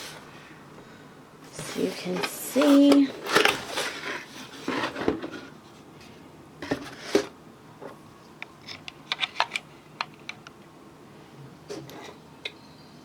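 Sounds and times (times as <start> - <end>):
cardboard box scraping: 1.7 - 5.5.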